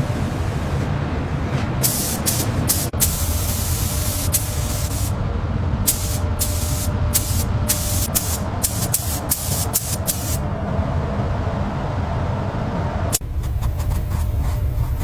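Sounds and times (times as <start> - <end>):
low rumble: 0.0 - 15.0
spray gun hissing: 1.8 - 5.2, 5.9 - 10.4.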